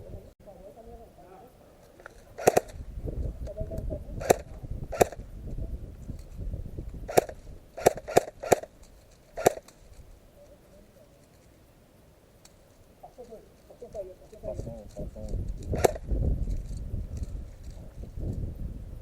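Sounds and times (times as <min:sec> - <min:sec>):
airsoft gun shots: 0:02.4 - 0:02.8, 0:04.2 - 0:05.2, 0:07.1 - 0:08.7, 0:09.4 - 0:09.7, 0:15.8 - 0:16.0.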